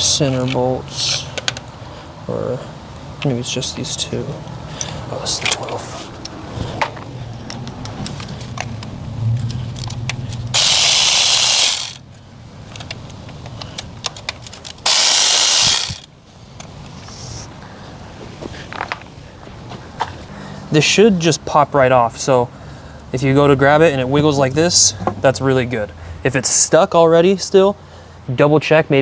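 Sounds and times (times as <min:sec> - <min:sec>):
clicks of tool and bolt handling: 0:00.3 - 0:01.7, 0:04.7 - 0:17.0
power tool running: 0:10.6 - 0:12.0, 0:14.5 - 0:16.1.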